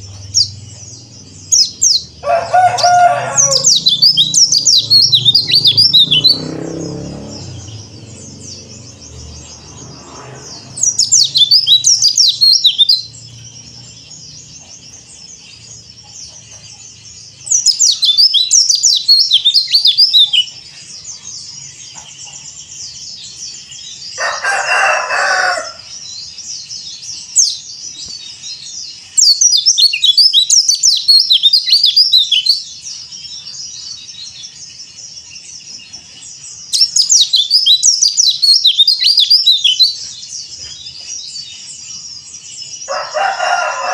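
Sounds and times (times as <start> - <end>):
lower-pitched bird call: 0.0 - 9.6
bird twittering chirps: 0.0 - 43.9.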